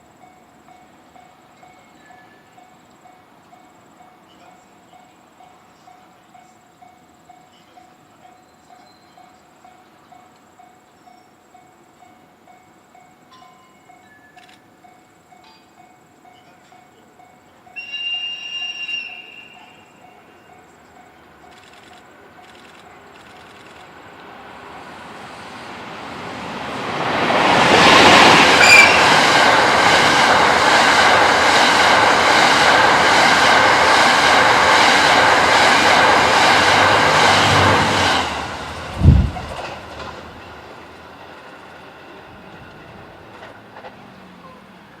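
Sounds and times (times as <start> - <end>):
train passing at speed: 0.0 - 45.0
brief high tone: 28.6 - 29.2.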